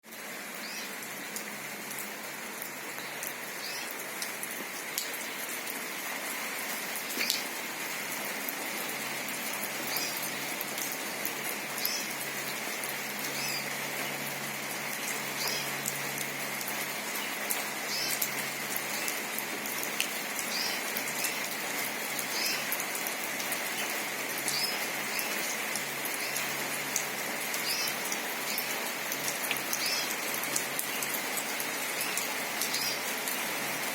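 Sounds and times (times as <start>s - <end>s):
steady rain falling: 0.0s - 33.9s.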